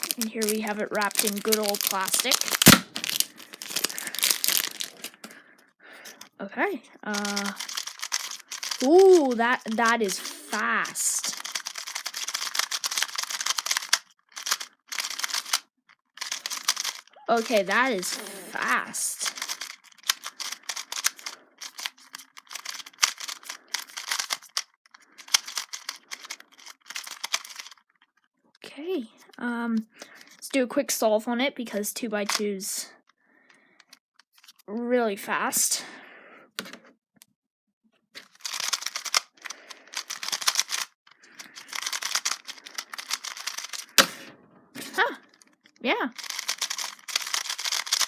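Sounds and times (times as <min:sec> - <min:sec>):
puzzle cube clicking: 0:00.0 - 0:05.3, 0:07.1 - 0:15.6, 0:16.2 - 0:27.8, 0:38.2 - 0:45.5, 0:46.1 - 0:48.0.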